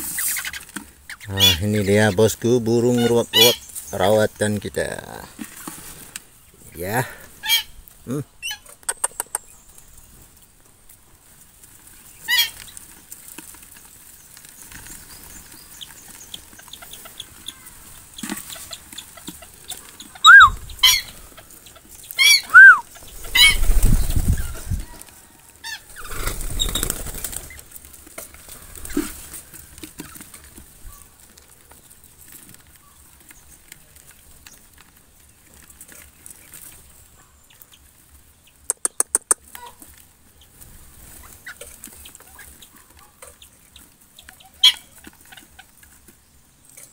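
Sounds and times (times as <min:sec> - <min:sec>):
wings flapping: 0:00.0 - 0:01.9, 0:11.6 - 0:34.9
waterhens clucking: 0:00.0 - 0:34.8, 0:35.4 - 0:46.9.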